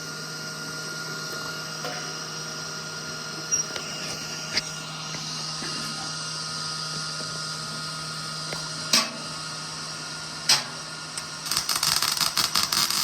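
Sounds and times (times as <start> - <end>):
welder machine hum: 0.0 - 13.0
sharp pops of arc striking: 8.5 - 9.4, 10.5 - 10.9
crackling welding arc: 8.5 - 13.0.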